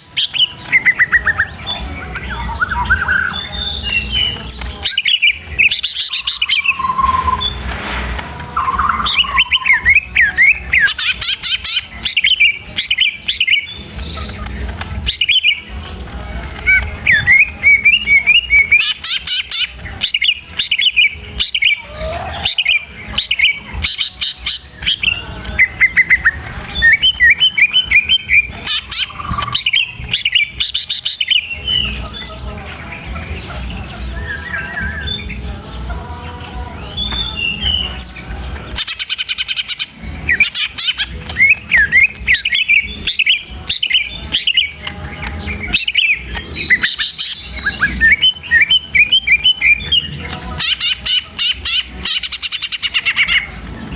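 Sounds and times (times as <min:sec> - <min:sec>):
young songbird chirping: 0:00.0 - 0:07.6, 0:08.6 - 0:14.3, 0:38.8 - 0:53.5.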